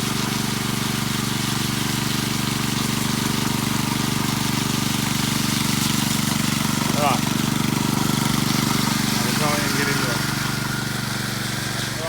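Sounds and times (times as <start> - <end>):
power trowel engine running: 0.0 - 12.0.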